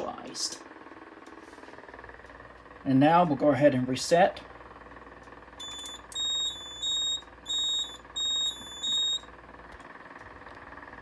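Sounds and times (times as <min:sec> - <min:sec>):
faint steady hum: 0:00.0 - 0:11.0
fire alarm panel beeping: 0:05.6 - 0:09.3.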